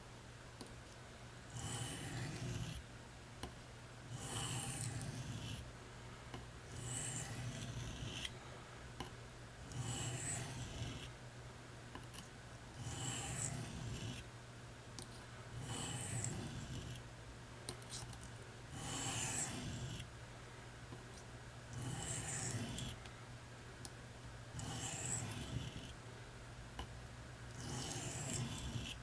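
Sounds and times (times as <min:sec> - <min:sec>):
knife rasping on whetstone: 0:01.5 - 0:02.8, 0:04.1 - 0:05.6, 0:06.7 - 0:08.3, 0:09.7 - 0:11.1, 0:12.8 - 0:14.2, 0:15.6 - 0:17.0, 0:18.8 - 0:20.0, 0:21.8 - 0:23.0, 0:24.6 - 0:25.9, 0:27.6 - 0:29.0.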